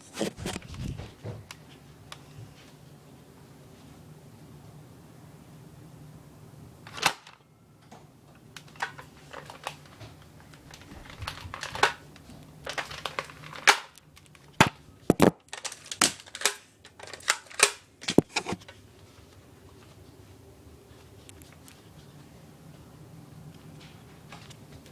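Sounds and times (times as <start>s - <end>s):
toy blasters clicking and popping: 12.7s - 14.0s.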